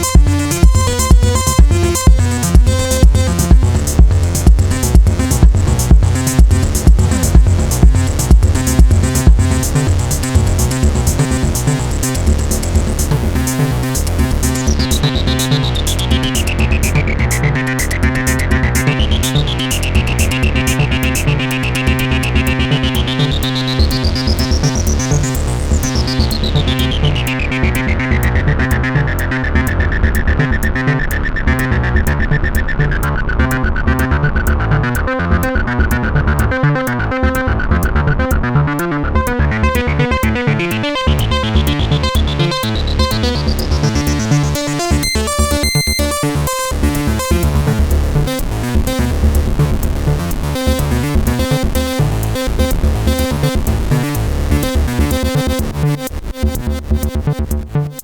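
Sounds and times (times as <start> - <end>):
drum machine beat: 0.0 - 26.9, 39.2 - 58.0
synth lines: 0.0 - 29.2, 32.5 - 58.0.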